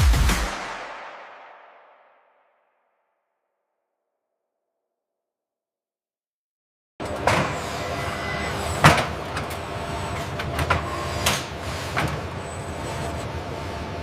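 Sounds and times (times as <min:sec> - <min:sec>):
industrial machinery humming: 0:07.0 - 0:14.0
sharp mechanical knocks and clanks: 0:08.6 - 0:12.4.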